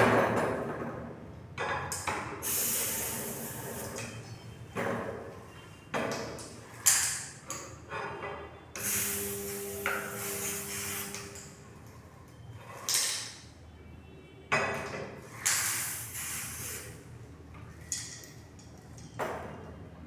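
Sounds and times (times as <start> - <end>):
aerosol can hissing: 2.4 - 4.1, 8.8 - 11.5, 15.4 - 17.0.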